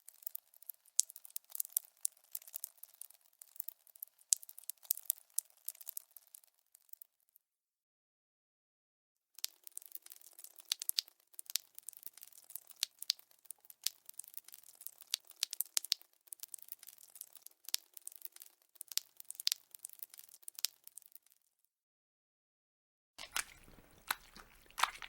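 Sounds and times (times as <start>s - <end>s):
flesh tearing crackling: 23.2s - 25.0s.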